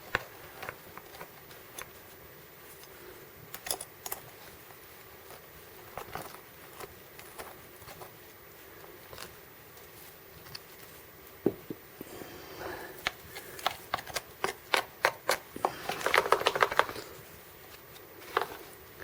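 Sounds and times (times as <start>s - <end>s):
small metal hardware clicking: 3.5s - 4.3s.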